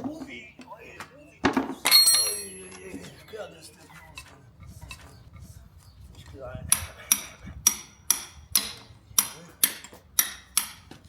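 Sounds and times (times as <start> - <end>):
hammer striking steel: 1.8 - 2.8, 6.7 - 11.0.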